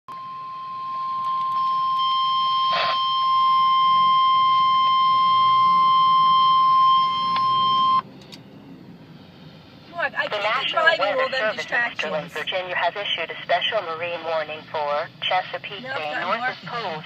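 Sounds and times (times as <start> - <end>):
steady high alarm tone: 0.1 - 8.0.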